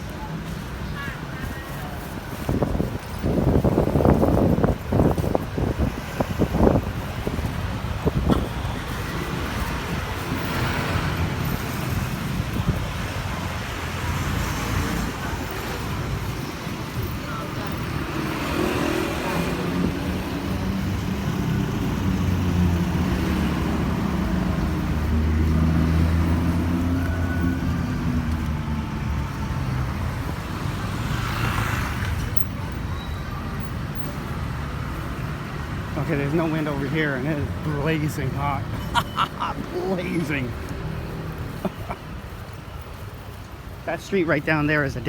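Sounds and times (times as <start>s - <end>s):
passing vehicles rumble: 0.0s - 45.0s
wind on microphone: 2.1s - 13.9s
vehicle passing by: 17.5s - 32.3s.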